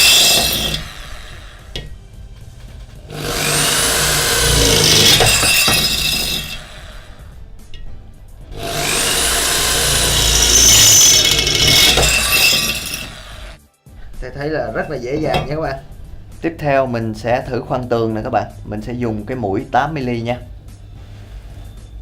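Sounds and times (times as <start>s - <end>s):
electric drill boring through steel: 0.0s - 13.6s.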